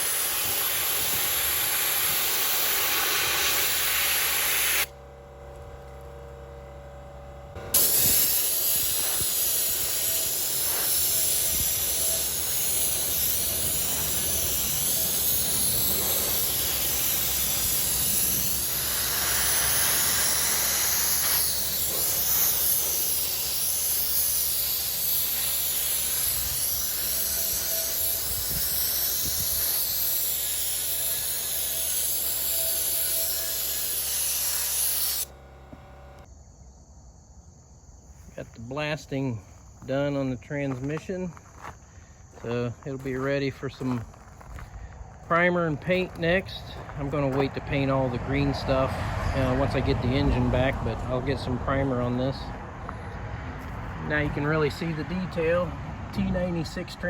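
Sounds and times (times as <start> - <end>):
sandblaster hissing: 0.0 - 4.9, 7.6 - 36.3, 45.2 - 53.2, 54.0 - 57.0.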